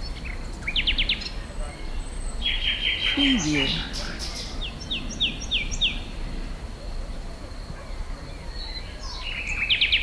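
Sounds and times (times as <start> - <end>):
bird chirping: 0.1 - 6.1.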